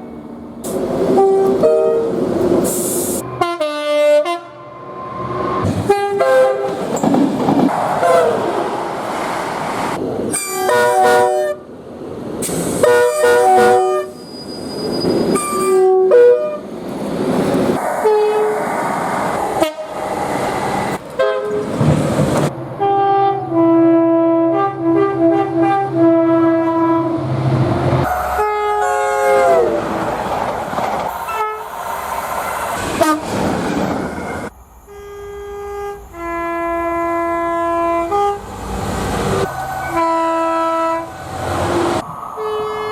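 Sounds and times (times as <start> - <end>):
passing train rumble: 0.0 - 42.9
train horns: 1.1 - 2.2, 3.2 - 6.8, 8.0 - 8.6, 10.3 - 11.7, 12.8 - 14.2, 15.3 - 16.7, 18.0 - 18.6, 19.5 - 20.1, 21.2 - 21.7, 22.8 - 27.3, 28.0 - 30.0, 31.3 - 31.7, 33.0 - 33.4, 34.9 - 42.9.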